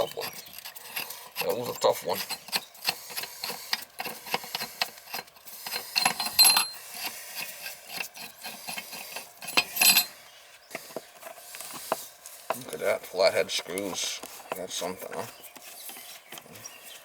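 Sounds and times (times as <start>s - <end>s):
hand tools scraping metal: 0.0s - 10.2s.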